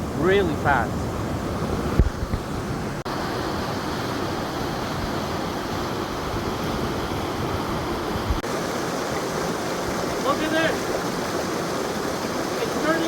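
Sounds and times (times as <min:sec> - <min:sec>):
floodwater rushing: 0:00.0 - 0:13.0.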